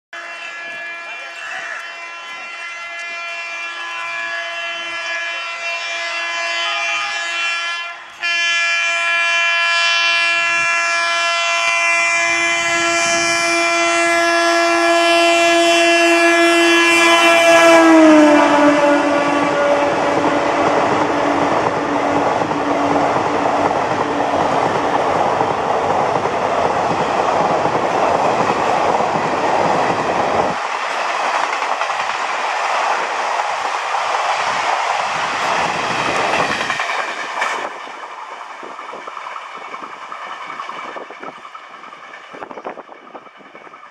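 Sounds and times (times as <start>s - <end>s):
locomotive horn: 0.2s - 25.0s
train coaches rumbling past: 0.2s - 43.9s
wheels clickety-clack on rails: 17.7s - 43.9s.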